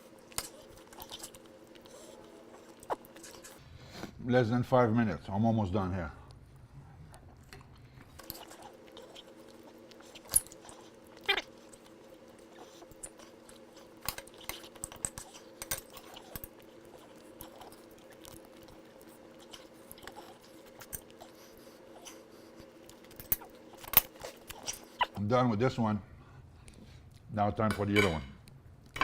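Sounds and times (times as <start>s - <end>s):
person chewing steak: 0.0s - 3.6s, 7.6s - 25.2s
steady low hum: 0.0s - 29.0s.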